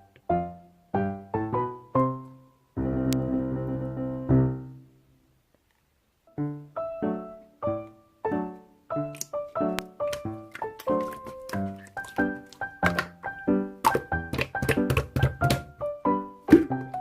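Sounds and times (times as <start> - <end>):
piano music: 0.0 - 5.0, 6.3 - 17.0.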